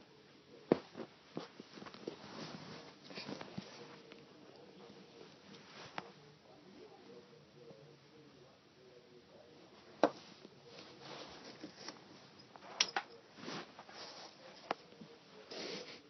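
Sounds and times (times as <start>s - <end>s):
soft scuffing and sliding: 0.7s - 4.2s, 10.0s - 12.3s, 13.4s - 16.0s.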